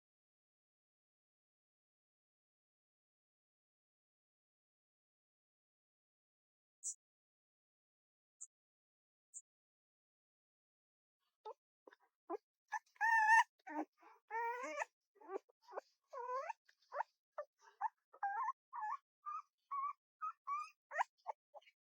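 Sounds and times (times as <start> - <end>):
puppy whining and yipping: 12.7 - 21.7.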